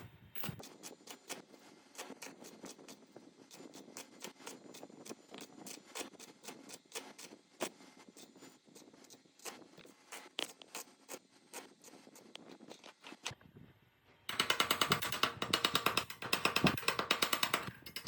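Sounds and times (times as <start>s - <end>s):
clicks and scrapes on metal parts: 14.3s - 18.0s
sharp ticks: 14.3s - 18.0s.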